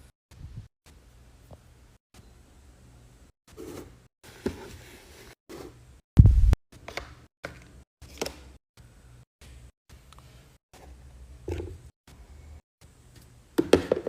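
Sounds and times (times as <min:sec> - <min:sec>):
heavy low thud: 0:06.2 - 0:06.6.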